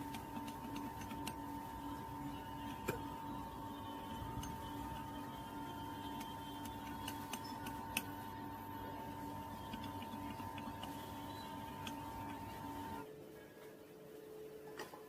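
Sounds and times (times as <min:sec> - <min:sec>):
metal lathe whining: 0:00.0 - 0:13.0.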